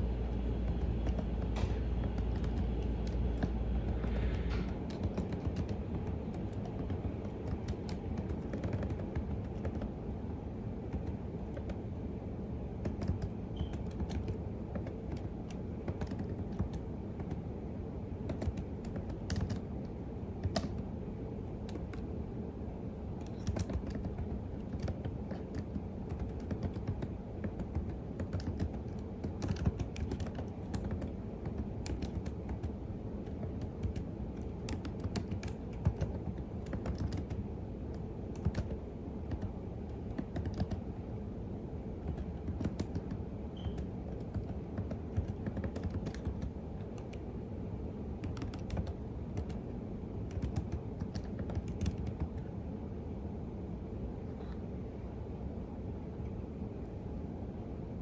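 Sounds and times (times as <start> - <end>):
low background hum: 0.0 - 58.0
keyboard key clicks: 0.6 - 10.0, 12.8 - 17.5, 18.2 - 19.6, 20.4 - 20.9, 23.2 - 40.8, 42.0 - 47.2, 48.2 - 49.6, 50.3 - 52.5.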